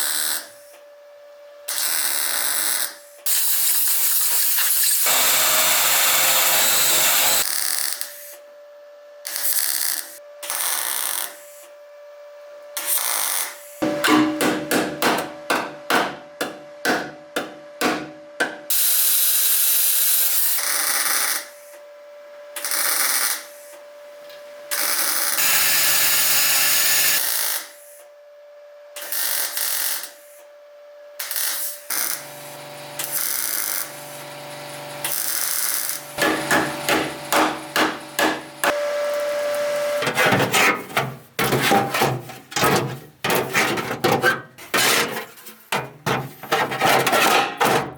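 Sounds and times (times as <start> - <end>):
power tool running: 1.7 - 8.3, 24.7 - 27.7, 31.3 - 43.6
hand tool scraping metal: 36.2 - 38.8, 40.0 - 47.9.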